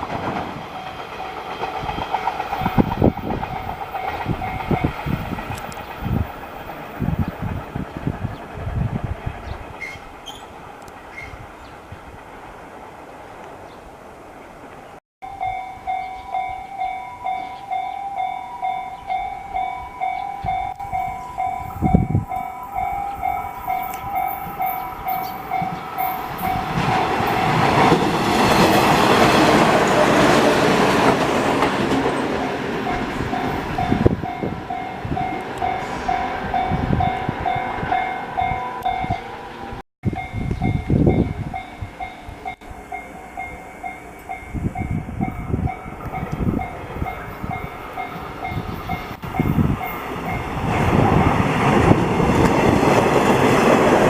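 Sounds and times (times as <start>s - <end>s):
level-crossing warning bell: 0.0s - 5.8s, 15.2s - 30.4s, 32.1s - 51.9s
train wheels on rails: 0.0s - 54.0s.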